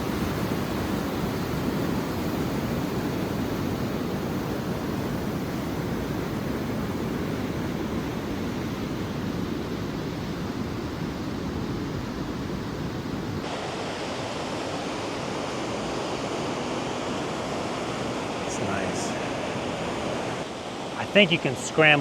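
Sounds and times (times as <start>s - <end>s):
waterfall rushing: 13.4s - 22.0s.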